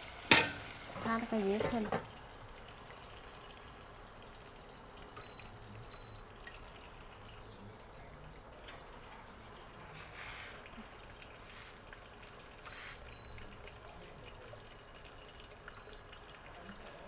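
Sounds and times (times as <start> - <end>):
chicken sizzling in oil: 0.0 - 17.0
loud hiss: 10.0 - 11.8.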